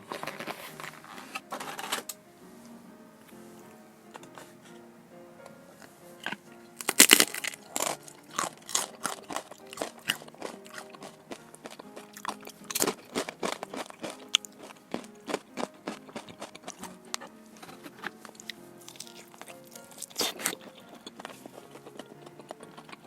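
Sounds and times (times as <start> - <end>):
soft background music: 0.0 - 23.0
crunching crisp food: 6.2 - 23.0.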